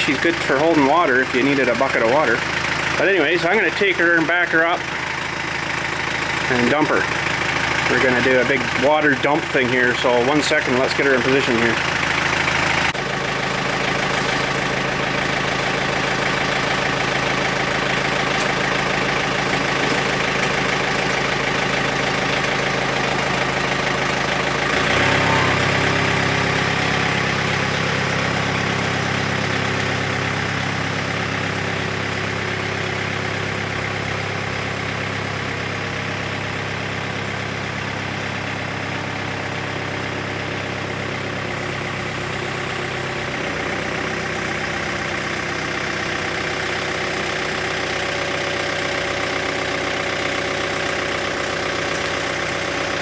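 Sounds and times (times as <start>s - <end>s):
tractor diesel engine running: 0.0s - 53.0s.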